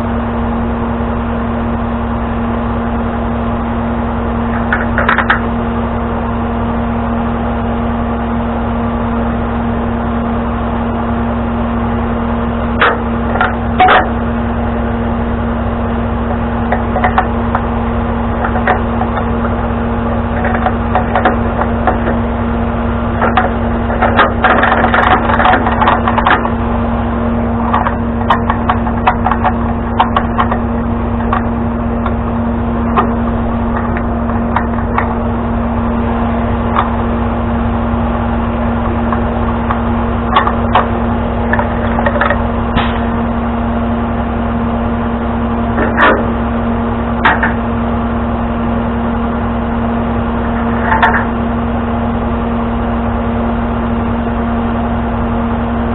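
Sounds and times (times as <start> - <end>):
truck engine idling: 0.0 - 55.9
knocks and clanks: 4.5 - 5.5, 12.8 - 14.2, 16.6 - 17.7, 18.3 - 19.6, 20.3 - 22.3, 23.2 - 26.6, 27.6 - 32.2, 32.9 - 35.3, 39.0 - 43.2, 45.8 - 46.4, 47.2 - 47.6, 50.5 - 51.4.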